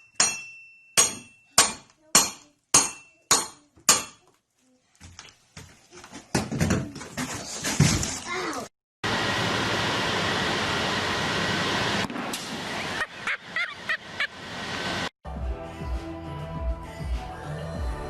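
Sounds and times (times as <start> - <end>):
sharp ringing strikes: 0.0 - 1.8.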